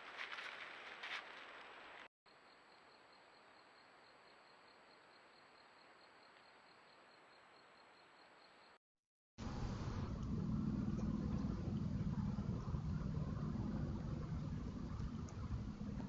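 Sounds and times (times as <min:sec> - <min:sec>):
high insect chirp: 0:02.3 - 0:08.8.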